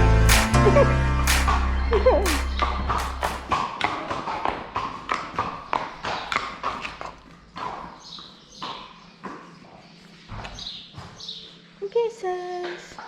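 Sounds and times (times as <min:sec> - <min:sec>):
hooves clip-clopping on hard ground: 0:02.6 - 0:11.3.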